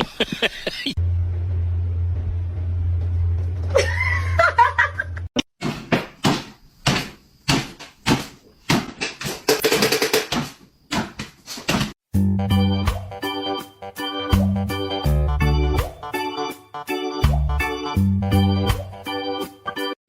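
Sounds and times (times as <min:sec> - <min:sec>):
steady low hum: 0:01.0 - 0:03.8
sharp knocks: 0:05.6 - 0:12.0.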